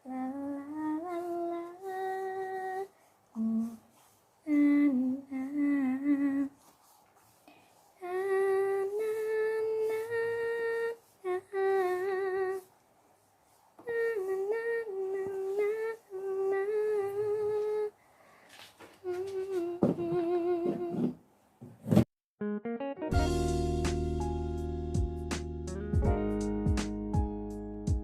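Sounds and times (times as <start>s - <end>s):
woman humming: 0.0s - 3.8s, 13.8s - 18.0s, 19.0s - 21.2s.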